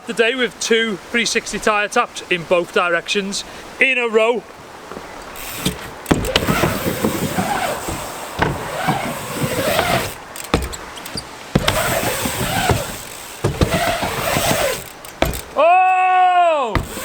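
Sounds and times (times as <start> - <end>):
sharp knocks: 5.6 - 15.6, 16.7 - 17.0.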